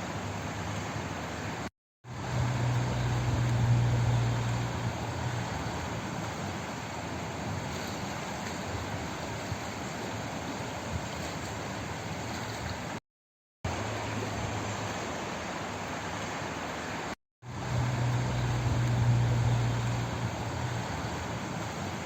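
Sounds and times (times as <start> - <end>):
flowing water rushing: 0.0 - 13.0, 13.7 - 22.0
deep rumble: 17.5 - 21.3.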